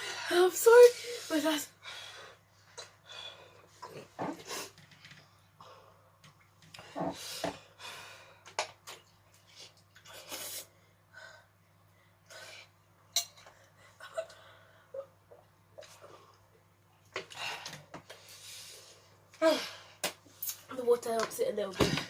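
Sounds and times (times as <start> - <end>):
person breathing hard: 6.9 - 8.5.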